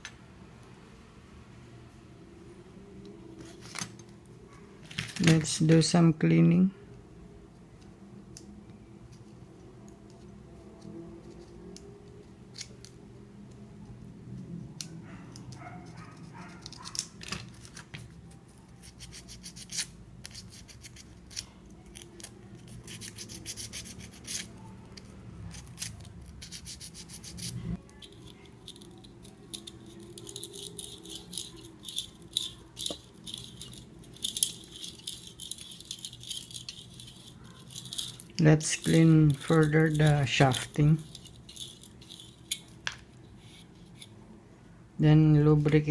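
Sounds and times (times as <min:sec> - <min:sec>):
small parts clicking and rattling: 0:11.2 - 0:13.6, 0:14.8 - 0:44.2
scratchy rubbing strokes: 0:22.6 - 0:24.6, 0:25.5 - 0:27.8.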